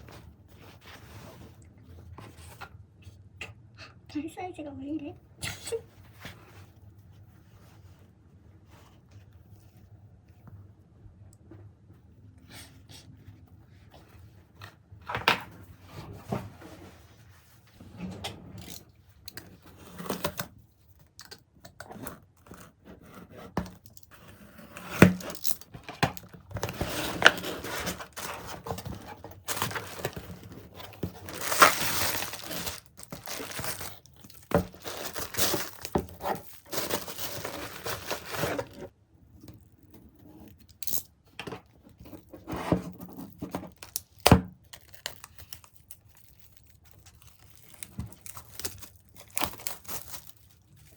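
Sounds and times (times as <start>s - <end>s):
paper or plastic crinkling: 23.6s - 38.9s, 41.8s - 50.9s.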